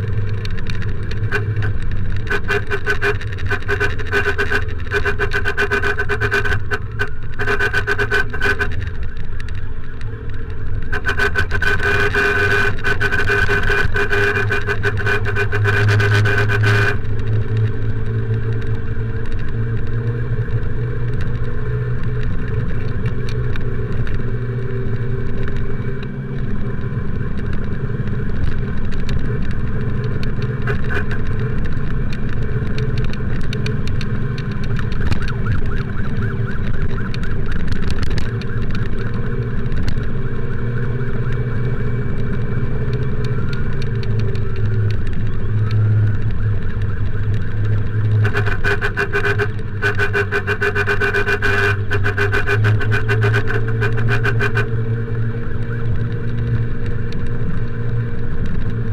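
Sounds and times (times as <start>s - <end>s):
emergency siren wailing: 0.0s - 58.9s
motorcycle engine running: 0.0s - 58.9s.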